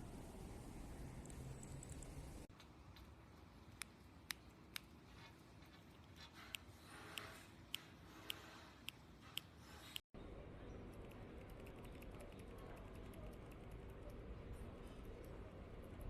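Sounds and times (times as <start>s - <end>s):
light rapid ticking: 10.8s - 16.0s.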